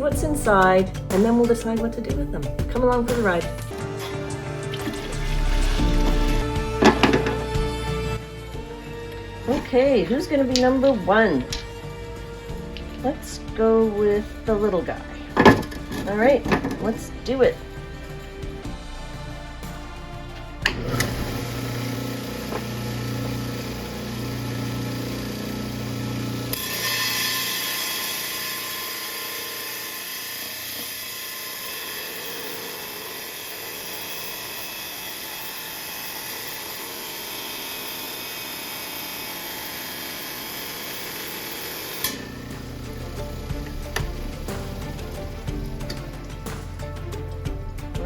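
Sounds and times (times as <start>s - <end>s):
saw motor humming: 2.8s - 48.0s
high-pitched blade grinding stone: 20.7s - 45.2s.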